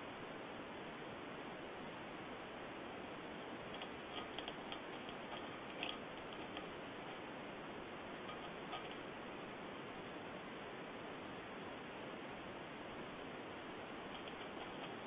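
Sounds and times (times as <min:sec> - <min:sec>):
background hiss: 0:00.0 - 0:15.0
faint irregular clicks and taps: 0:03.7 - 0:07.2, 0:08.2 - 0:09.0, 0:14.1 - 0:15.0.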